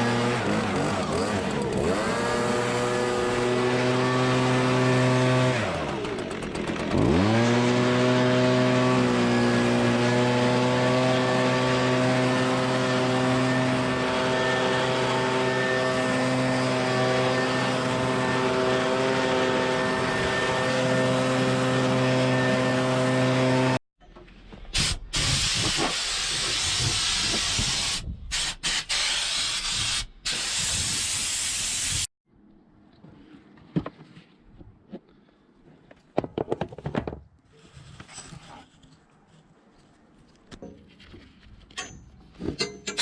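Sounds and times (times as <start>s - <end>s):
farm machinery engine humming: 0.0s - 23.7s
loud rushing hiss: 24.8s - 32.1s.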